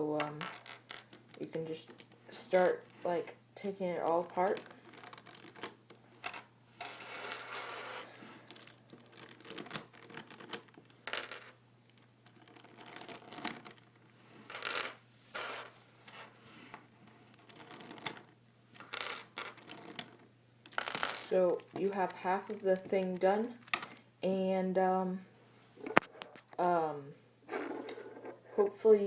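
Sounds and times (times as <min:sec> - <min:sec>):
plastic puzzle pieces clicking: 0:04.5 - 0:06.4.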